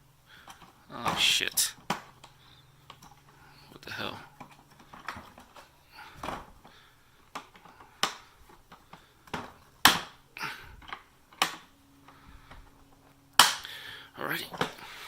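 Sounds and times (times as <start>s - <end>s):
hard plastic clacks and knocks: 0.4s - 3.4s, 4.3s - 10.1s.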